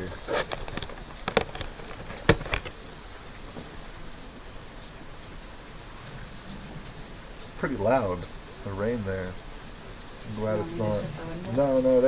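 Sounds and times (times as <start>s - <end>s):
heavy rain hissing on surfaces: 0.0s - 12.0s.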